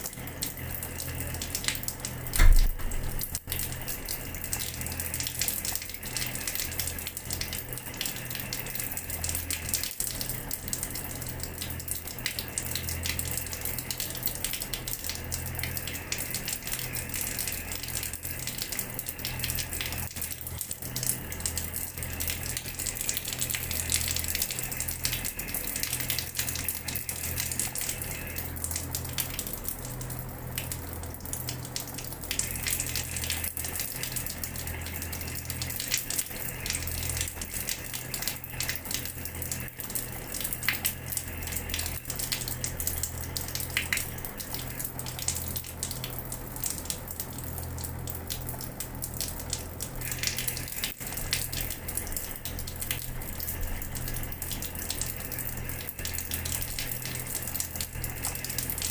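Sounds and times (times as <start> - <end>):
tap water splashing on floor: 1.4 - 5.8.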